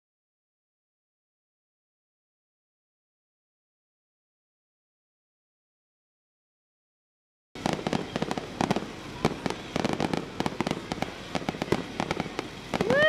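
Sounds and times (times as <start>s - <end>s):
fireworks bangs: 7.6s - 13.0s
fireworks crackling pops: 7.6s - 13.0s.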